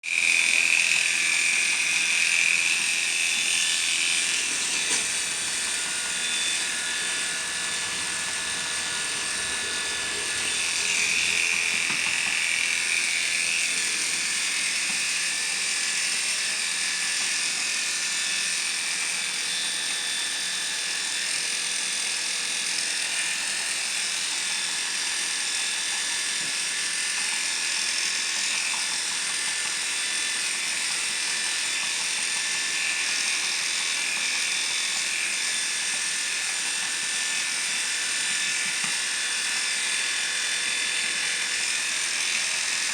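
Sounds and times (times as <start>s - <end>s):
electric clippers buzzing: 0.0s - 42.9s.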